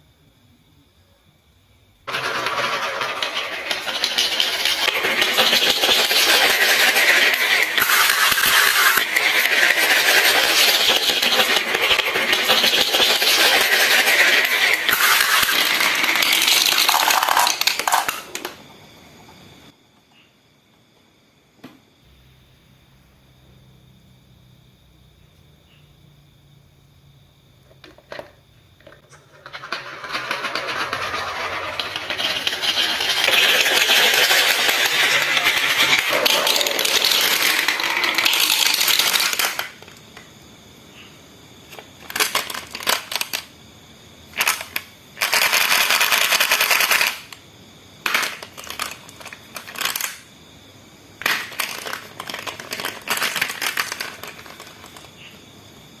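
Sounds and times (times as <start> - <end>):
marbles rolling on wooden track: 2.0 - 18.7, 27.6 - 40.0, 41.7 - 43.5, 44.4 - 47.4, 48.0 - 50.3, 51.2 - 55.1.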